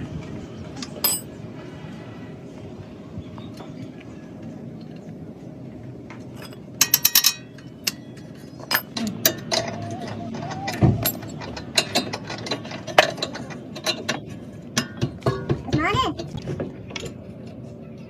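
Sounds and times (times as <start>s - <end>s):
metal tools clicking and clanking: 0.9s - 1.3s, 6.3s - 17.6s.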